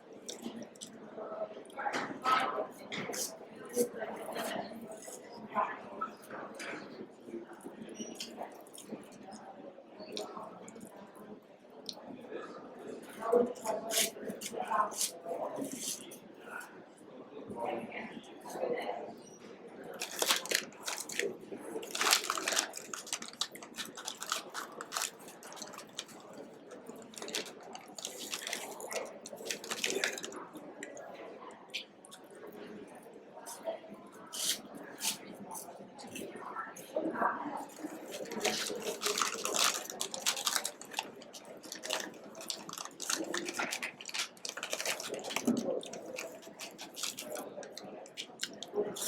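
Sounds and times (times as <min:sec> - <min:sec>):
crunching cheese curls: 0:19.9 - 0:30.4, 0:37.8 - 0:49.0.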